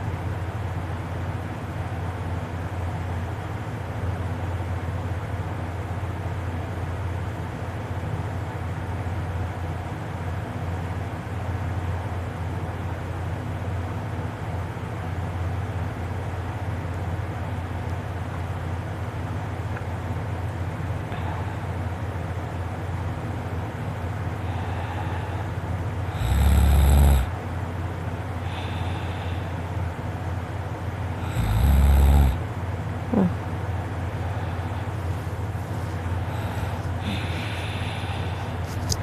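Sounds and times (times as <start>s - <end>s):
steady low hum: 0.0s - 39.0s
man snoring: 26.1s - 27.4s, 31.1s - 32.4s, 36.2s - 38.3s.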